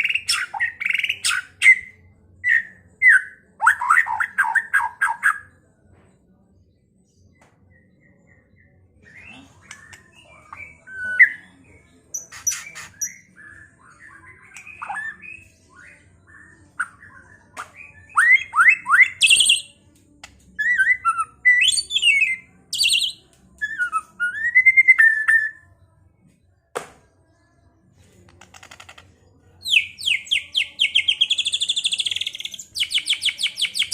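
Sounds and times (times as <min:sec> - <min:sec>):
songbird singing whistles: 0:12.2 - 0:19.7, 0:20.6 - 0:25.6, 0:29.6 - 0:33.9.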